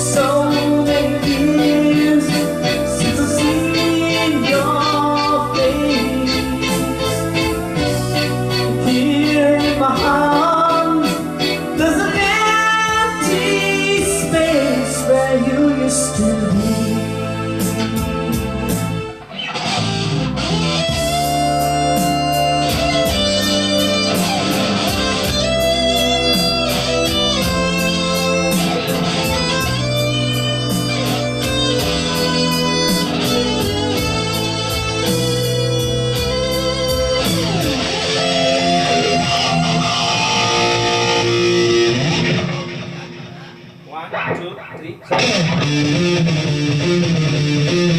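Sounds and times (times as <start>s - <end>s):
bass notes: 0.0s - 47.9s
guitar music: 0.0s - 47.9s
steady beat: 17.6s - 47.9s.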